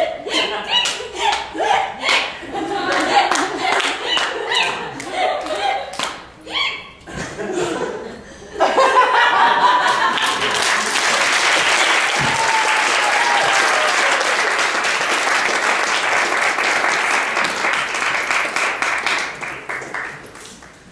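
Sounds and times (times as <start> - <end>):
audience applauding: 2.9 - 6.2, 9.6 - 20.9.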